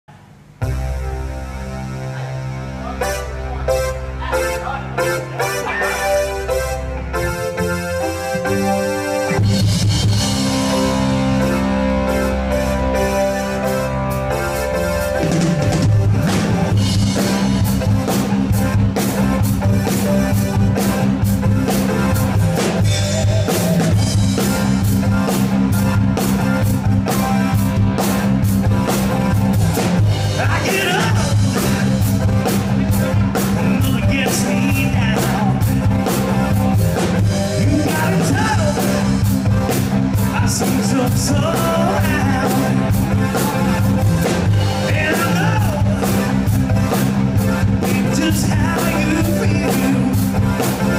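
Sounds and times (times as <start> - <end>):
bass guitar: 0.1 - 50.9
electric guitar: 0.6 - 50.9
drum kit: 3.0 - 50.9
person singing: 30.3 - 32.0, 32.9 - 39.2, 40.2 - 44.0, 44.7 - 46.4, 47.8 - 50.4.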